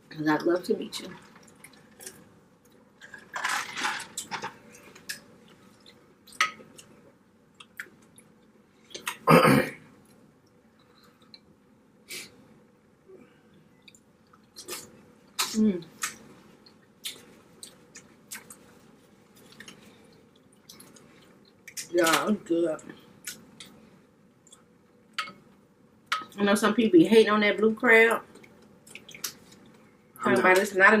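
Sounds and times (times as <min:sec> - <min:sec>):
person chewing: 0:13.8 - 0:21.9, 0:28.4 - 0:29.9.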